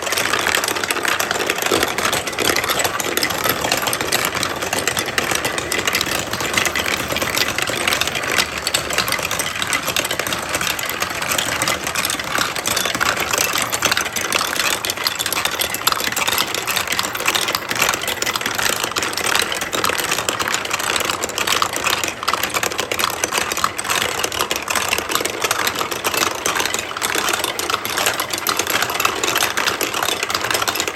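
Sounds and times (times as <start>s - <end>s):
marbles rattling down marble run: 0.0s - 30.9s.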